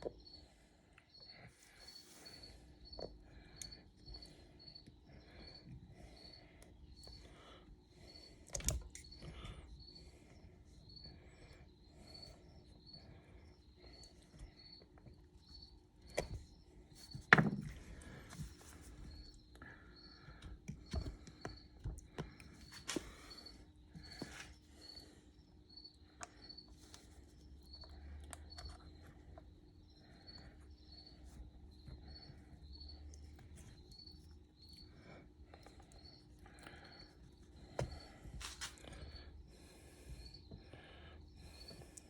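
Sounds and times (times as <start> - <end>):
cricket chirping: 8.9 - 17.1, 19.1 - 26.7, 27.4 - 39.3.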